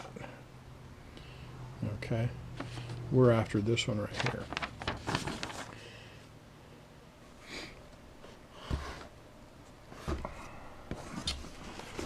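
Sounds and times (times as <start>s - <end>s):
rustling: 4.1s - 5.8s.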